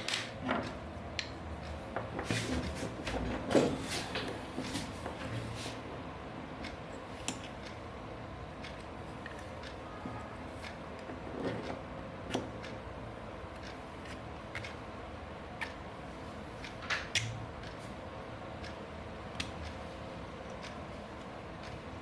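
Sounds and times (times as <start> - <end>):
steady low hum: 0.0 - 22.0
small hard parts clicking and tapping: 13.5 - 14.9.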